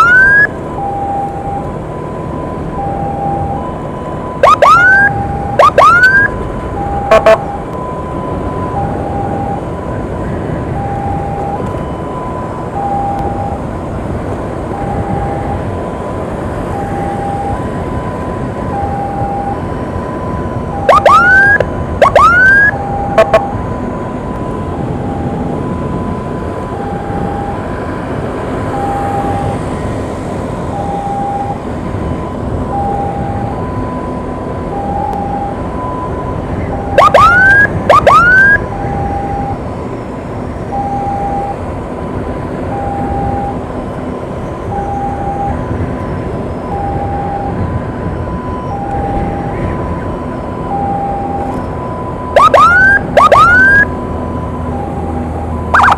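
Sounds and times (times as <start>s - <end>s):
rising siren whoops: 0.0s - 9.8s, 10.7s - 13.6s, 16.7s - 27.7s, 32.2s - 39.6s, 42.7s - 43.7s, 44.6s - 45.7s, 46.5s - 55.9s
engine and road noise: 0.0s - 55.9s
two-tone ambulance siren: 0.0s - 55.9s.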